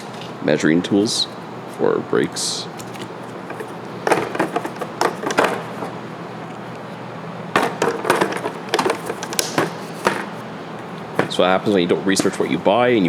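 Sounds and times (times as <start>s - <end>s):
metal hand tools clattering: 2.7s - 6.9s, 7.5s - 12.7s.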